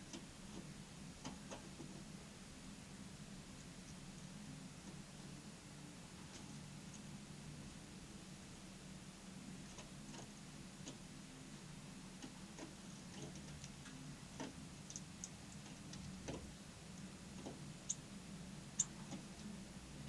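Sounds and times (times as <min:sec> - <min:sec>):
light clicks and taps: 0:00.1 - 0:02.0, 0:12.2 - 0:18.0.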